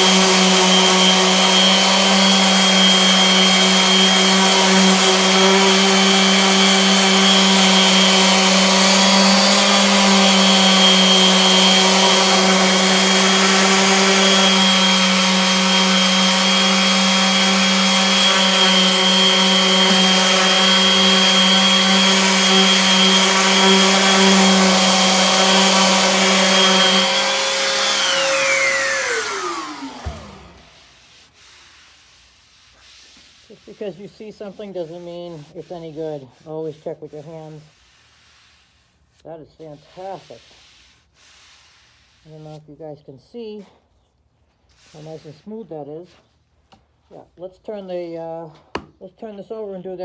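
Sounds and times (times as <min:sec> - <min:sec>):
sander motor winding down: 0:00.0 - 0:30.8
electric power sander: 0:00.0 - 0:31.1.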